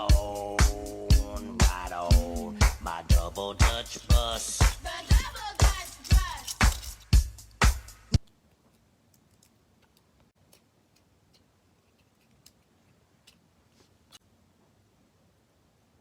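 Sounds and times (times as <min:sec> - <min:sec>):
funk song with heavy beat: 0:00.0 - 0:08.2.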